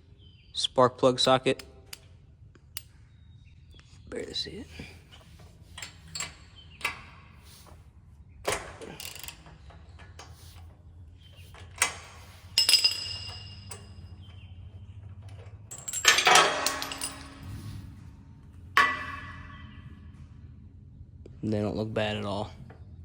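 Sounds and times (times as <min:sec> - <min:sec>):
metal tools clinking: 0:04.4 - 0:07.8, 0:08.5 - 0:18.0, 0:18.8 - 0:19.9.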